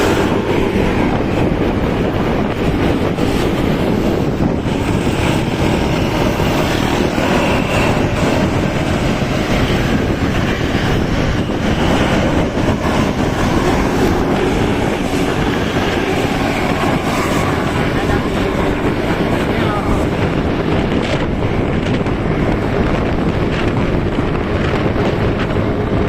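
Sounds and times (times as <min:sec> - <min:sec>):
vehicle rumble: 0:00.0 - 0:26.0.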